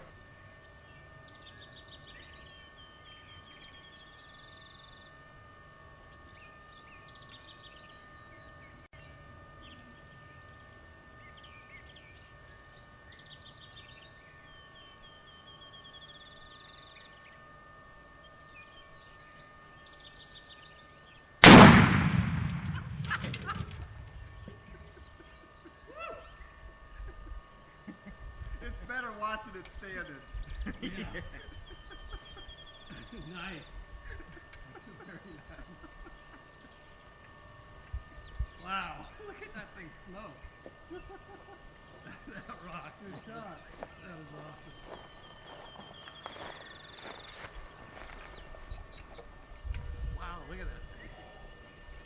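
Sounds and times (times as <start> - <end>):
faint steady hum: 0.0 - 52.0
bird song: 0.4 - 5.3, 6.0 - 21.4, 23.5 - 26.6, 30.3 - 33.9, 37.9 - 39.3, 42.5 - 49.6
explosion blast echoing: 21.4 - 24.1.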